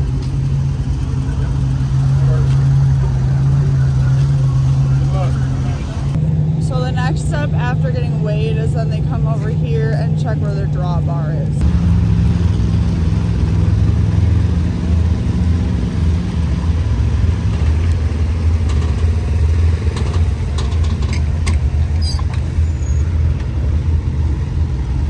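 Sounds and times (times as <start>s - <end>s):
vehicle engine running: 0.0s - 25.0s.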